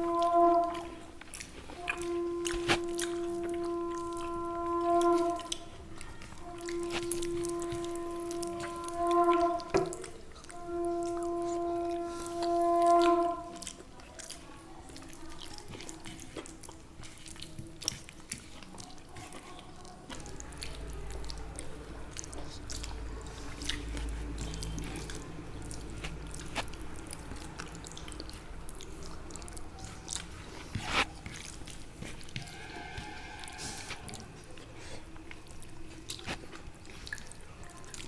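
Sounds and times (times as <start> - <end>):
people chewing and eating: 0.0 - 38.0
low rumble: 32.4 - 34.7.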